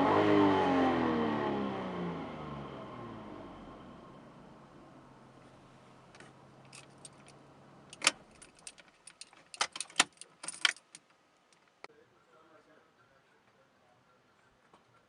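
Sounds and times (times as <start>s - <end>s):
keys jangling: 6.6s - 11.1s.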